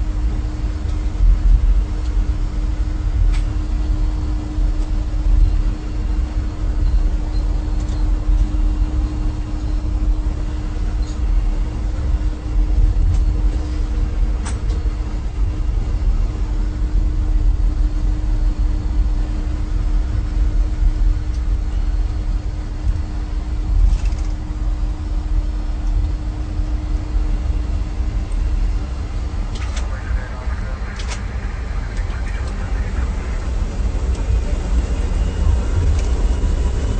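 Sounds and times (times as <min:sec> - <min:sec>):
low rumble of engines: 0:00.0 - 0:36.9
steady hum: 0:00.0 - 0:36.9.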